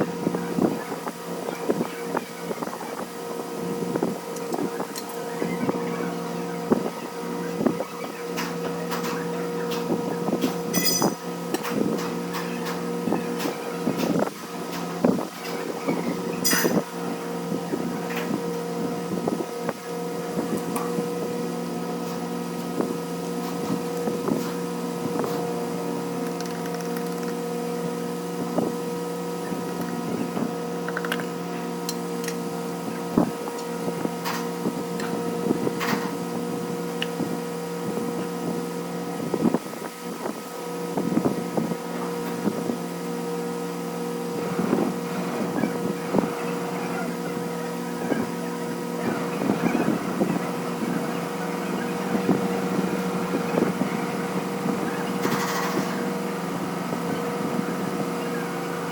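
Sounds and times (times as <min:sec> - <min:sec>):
steady machine hum: 0:00.0 - 0:58.9
sharp clicks and clinks: 0:10.7 - 0:11.2.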